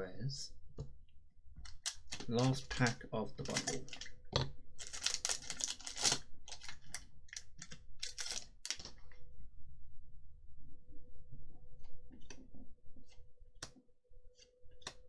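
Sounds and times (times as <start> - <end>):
foil wrapper tearing and crinkling: 1.7 - 4.2, 4.8 - 8.9.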